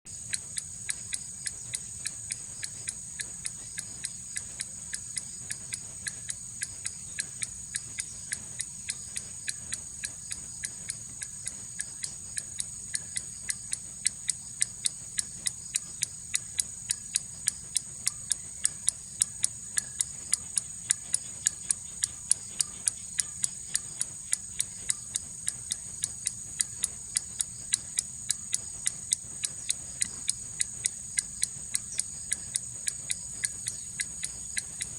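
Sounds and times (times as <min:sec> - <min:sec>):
pendulum clock ticking: 0:00.2 - 0:34.9.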